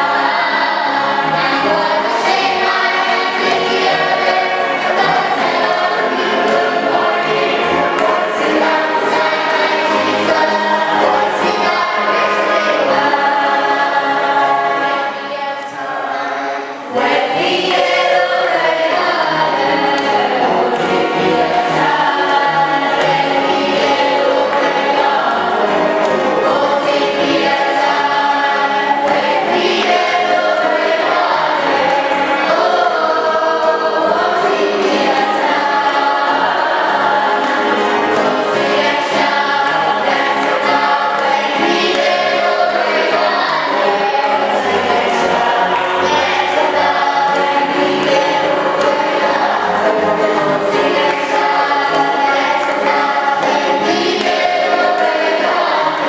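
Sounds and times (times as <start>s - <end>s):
choir singing a gospel song: 0.0s - 56.0s.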